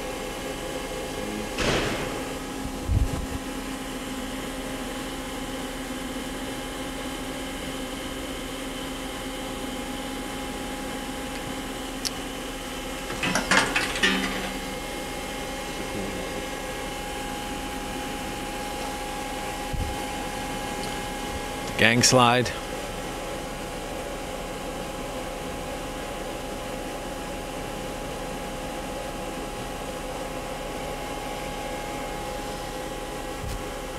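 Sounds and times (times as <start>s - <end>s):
clatter of clicks and rattles: 13.1s - 14.6s.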